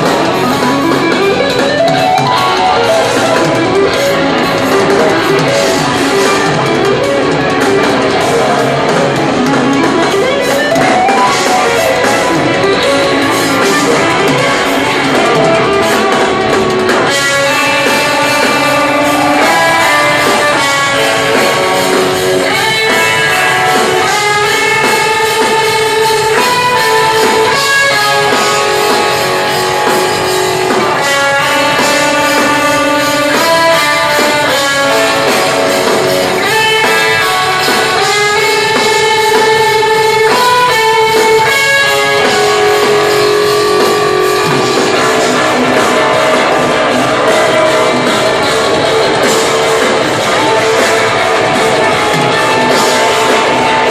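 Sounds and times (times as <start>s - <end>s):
drum kit: 0.0s - 53.9s
electric guitars playing: 0.0s - 53.9s.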